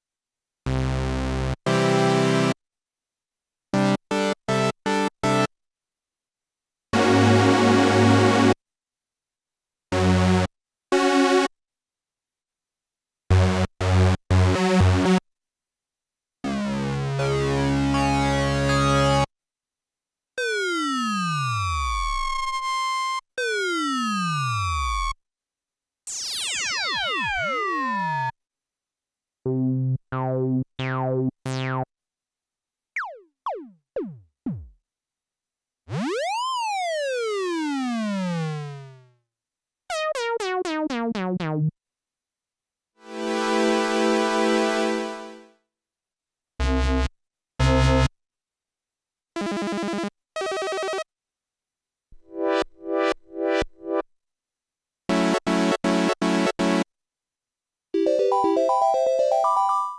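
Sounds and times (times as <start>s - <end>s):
synthesizer laser zap notes: 26.1s - 28.3s.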